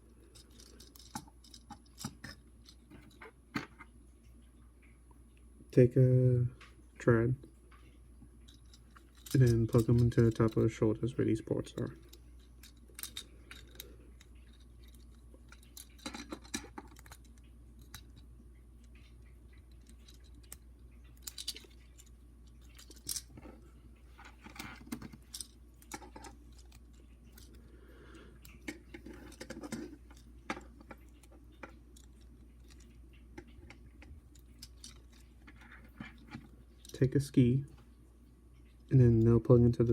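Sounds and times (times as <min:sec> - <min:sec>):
steady low hum: 0:00.0 - 0:39.9
plastic parts clicking: 0:00.4 - 0:03.8, 0:11.7 - 0:18.2, 0:21.2 - 0:23.5, 0:24.2 - 0:27.6, 0:28.4 - 0:36.5.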